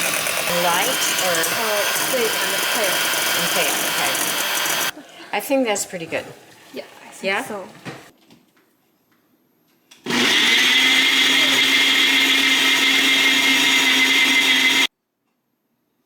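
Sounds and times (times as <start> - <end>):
electric kitchen mixer running: 0.0 - 5.0, 10.1 - 14.9.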